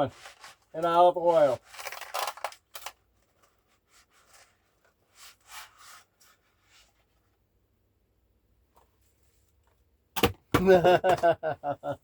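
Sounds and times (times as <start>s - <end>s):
packaging rustling: 1.5s - 3.6s.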